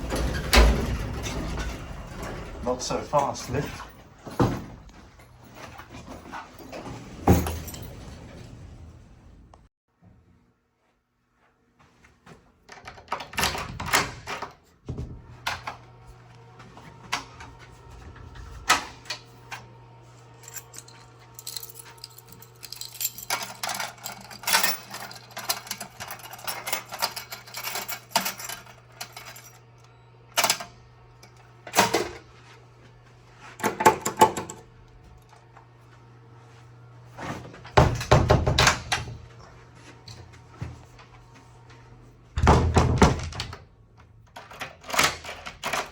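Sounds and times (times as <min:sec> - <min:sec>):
steady low hum: 0:14.9 - 0:33.6
keys jangling: 0:20.4 - 0:29.6.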